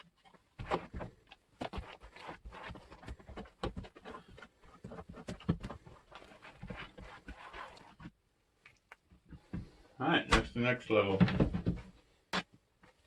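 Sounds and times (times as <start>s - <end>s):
spoon stirring thick paste: 0.0s - 9.8s.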